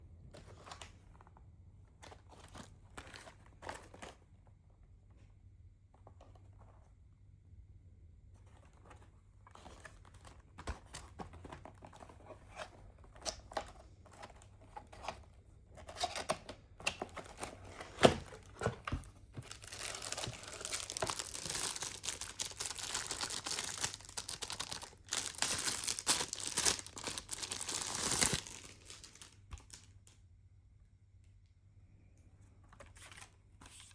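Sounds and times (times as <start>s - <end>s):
packaging rustling and crinkling: 2.0s - 4.2s, 15.8s - 29.9s
packaging tearing: 19.4s - 29.9s.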